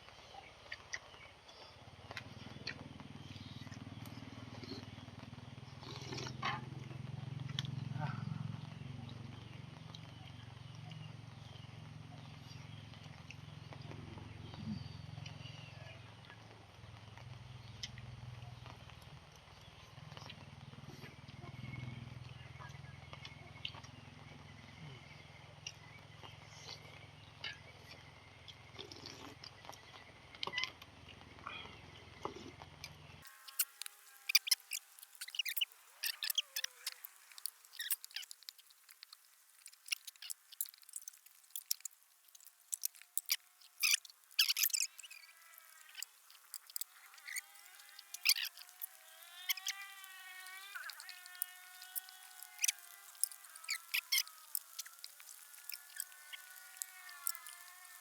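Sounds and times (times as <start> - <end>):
wet chewing clicks and smacks: 28.5 - 30.8, 33.2 - 58.0
squeaky wavering tones: 33.3 - 58.0.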